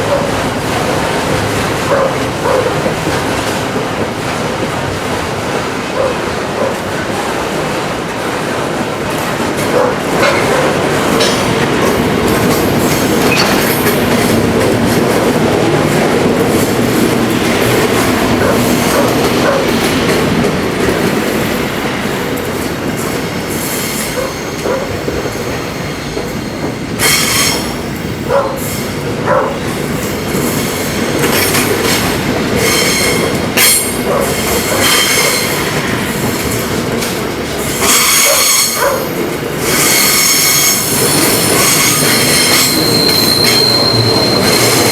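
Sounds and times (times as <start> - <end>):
train wheels rumbling on rails: 0.0 - 44.9
high-pitched wheel squeals: 39.8 - 44.9.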